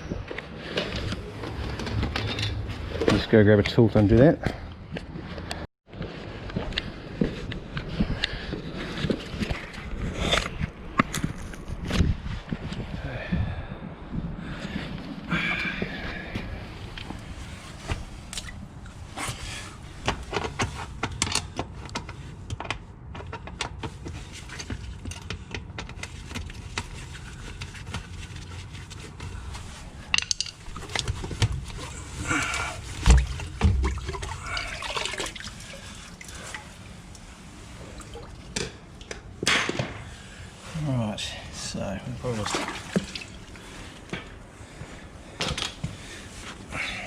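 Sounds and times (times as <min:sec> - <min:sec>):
tools clicking and knocking: 0:30.1 - 0:31.6.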